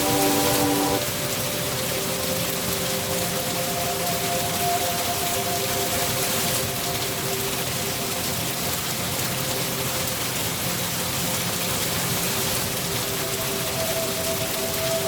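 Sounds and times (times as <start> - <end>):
faint held chord: 0.0 - 7.4
steady rain falling: 0.0 - 15.0.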